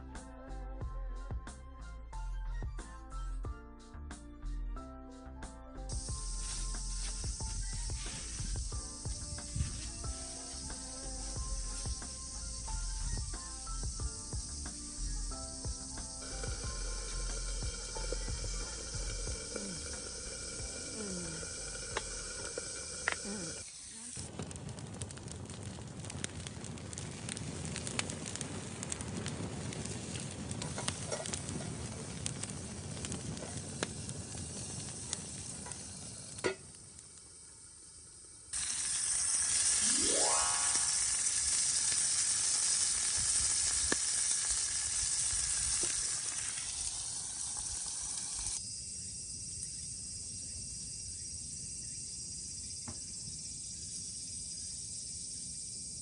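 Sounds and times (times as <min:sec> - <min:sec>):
chicken sizzling in a frying pan: 0:05.9 - 0:49.8.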